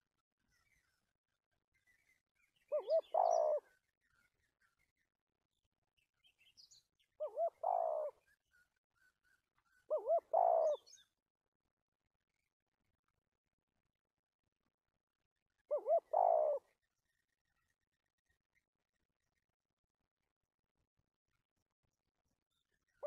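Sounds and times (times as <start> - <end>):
small birds chirping: 0.4 - 11.2, 15.5 - 18.7
dove cooing: 2.7 - 3.7, 7.2 - 8.2, 9.9 - 10.9, 15.7 - 16.7.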